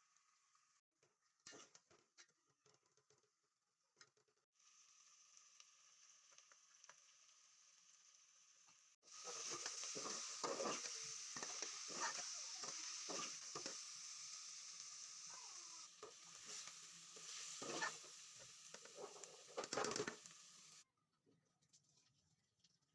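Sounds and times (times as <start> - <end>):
food sizzling in a frying pan: 4.6 - 20.8
spoon scraping a pan: 9.1 - 13.9, 16.0 - 20.4.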